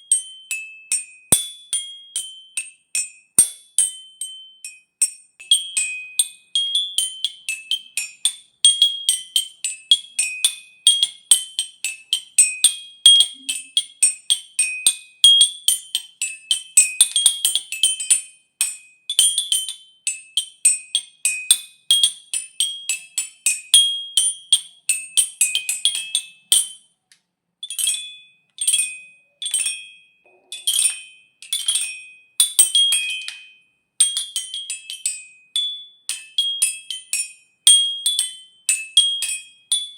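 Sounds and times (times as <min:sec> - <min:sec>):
xylophone struck with mallets: 0:05.4 - 0:15.9, 0:27.7 - 0:35.2.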